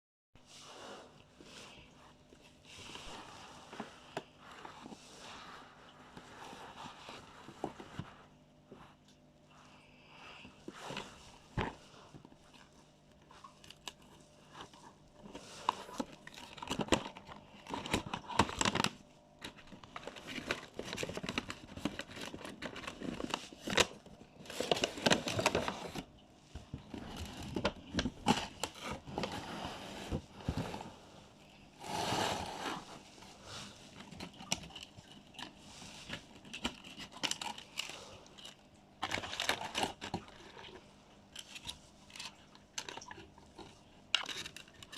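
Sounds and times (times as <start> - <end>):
packaging crinkling: 13.4 - 26.1, 33.5 - 44.9.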